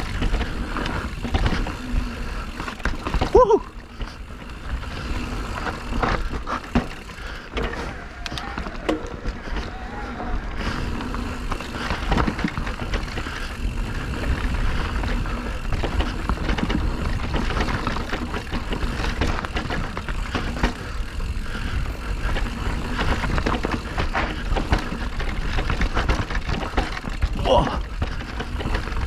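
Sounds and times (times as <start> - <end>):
bike knocking and rattling: 0.0 - 29.0
tyre noise: 0.0 - 29.0
wind rumbling on microphone: 7.7 - 29.0.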